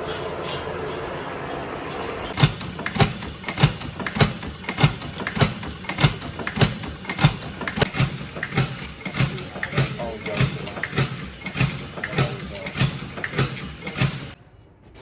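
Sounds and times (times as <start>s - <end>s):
steam engine clanking: 0.0s - 14.4s
steady background hum: 0.0s - 15.0s.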